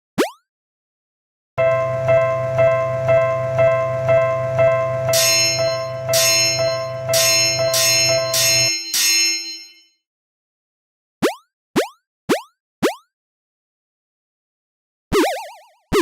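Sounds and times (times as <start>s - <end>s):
low hum: 1.6s - 8.7s
brighter bell struck: 1.6s - 9.8s
level crossing warning bell: 1.6s - 9.9s
cartoon boing: 15.1s - 16.0s.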